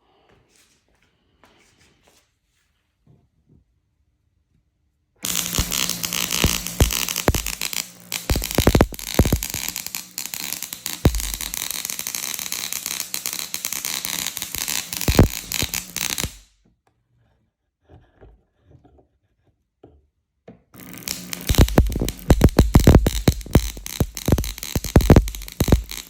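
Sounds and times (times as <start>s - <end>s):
spark coil crackling: 5.2s - 16.5s, 20.8s - 26.0s
steady buzz: 5.2s - 16.5s, 20.8s - 26.0s
faint clicks: 21.1s - 26.0s.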